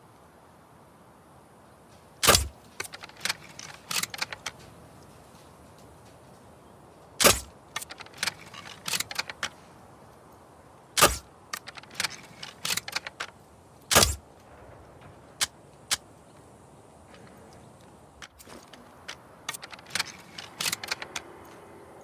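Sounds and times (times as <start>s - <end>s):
small clicks and metallic rattles: 1.9s - 10.4s, 11.0s - 16.4s, 17.1s - 22.0s.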